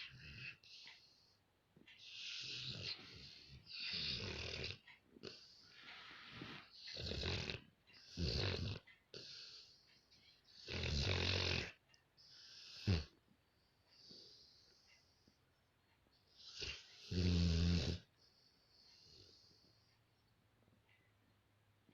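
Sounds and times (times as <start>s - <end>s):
dog snoring: 0.0s - 1.2s, 2.0s - 9.8s, 10.5s - 13.2s, 16.3s - 19.9s.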